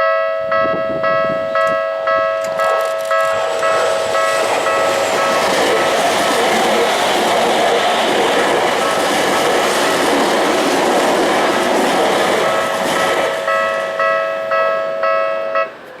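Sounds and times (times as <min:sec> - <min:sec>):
crossing warning bell ringing: 0:00.0 - 0:06.9, 0:11.4 - 0:16.0
electric train passing: 0:00.0 - 0:16.0.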